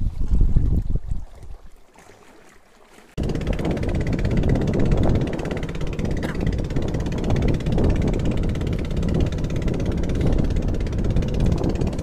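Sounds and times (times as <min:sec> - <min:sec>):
boat engine running: 0:03.1 - 0:12.0.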